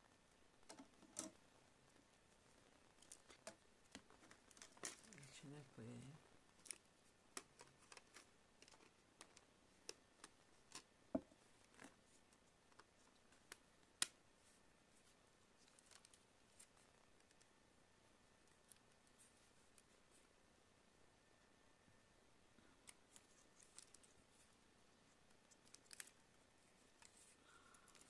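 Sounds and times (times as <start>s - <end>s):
small parts clicking and tapping: 0.6s - 1.4s, 2.9s - 5.2s, 6.6s - 12.0s.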